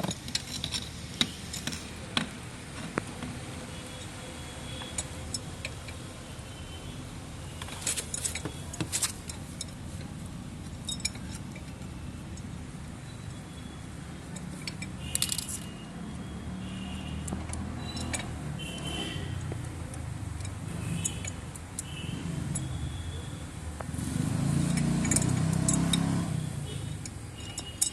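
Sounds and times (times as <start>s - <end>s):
light metallic clinks and taps: 7.6s - 13.7s, 17.2s - 18.7s, 24.6s - 26.1s, 26.8s - 27.9s.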